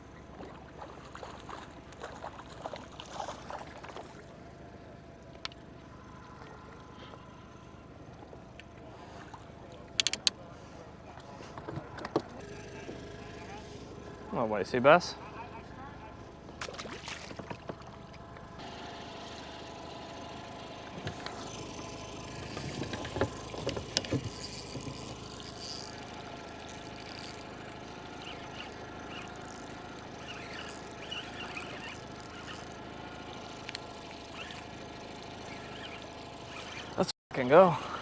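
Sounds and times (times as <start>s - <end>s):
boat motor humming: 0.0s - 38.0s
sharp clicks and knocks: 9.9s - 10.4s, 22.4s - 27.4s.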